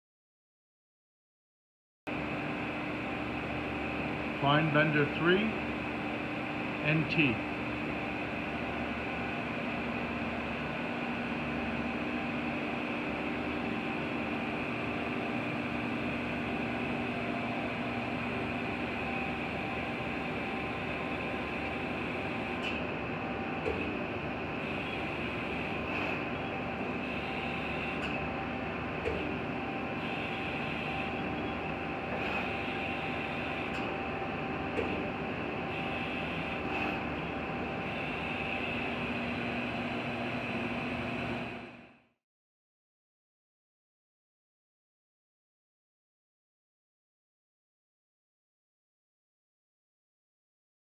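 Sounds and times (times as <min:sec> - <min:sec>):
high machine whine: 0:02.1 - 0:42.2
mechanical hum with tones: 0:02.1 - 0:42.2.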